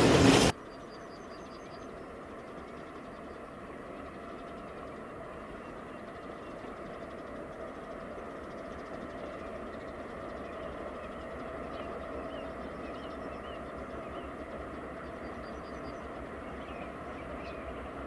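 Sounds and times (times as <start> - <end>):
train rumbling: 0.0 - 0.5.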